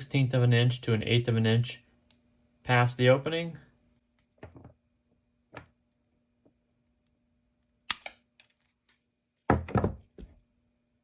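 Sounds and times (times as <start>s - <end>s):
wire cutters snipping: 7.9s - 8.5s.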